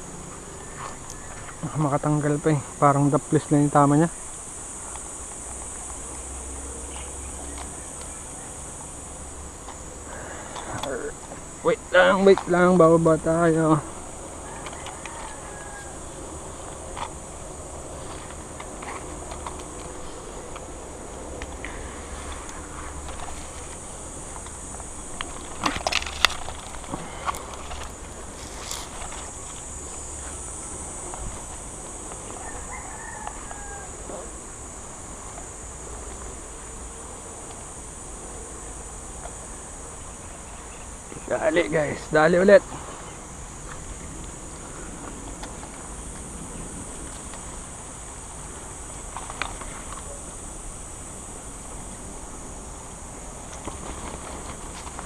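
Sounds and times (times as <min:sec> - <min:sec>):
high-pitched insect chorus: 0:00.0 - 0:55.0
rustles: 0:00.0 - 0:55.0
rooster crowing faintly: 0:14.0 - 0:16.5, 0:32.2 - 0:34.3.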